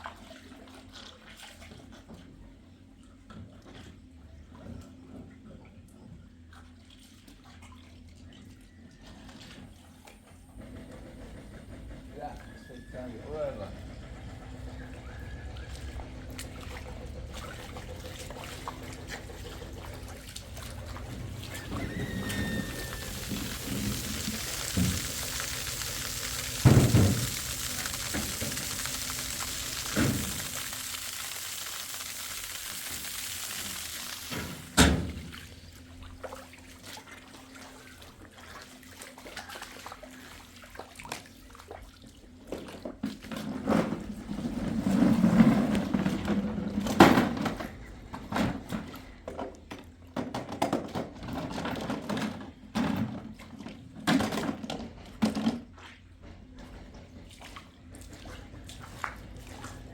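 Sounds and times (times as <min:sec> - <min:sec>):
water hissing: 0:20.7 - 0:35.6.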